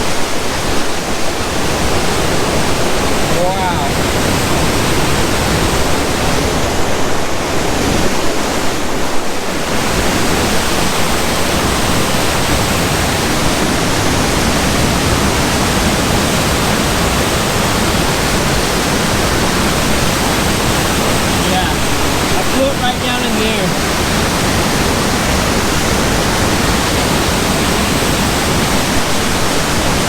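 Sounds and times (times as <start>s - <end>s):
waterfall rushing: 0.0s - 30.0s.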